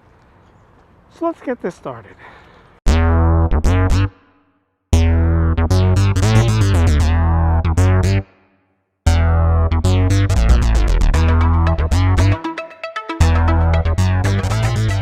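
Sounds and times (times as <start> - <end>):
synthesizer music with heavy bass: 9.1 - 15.0.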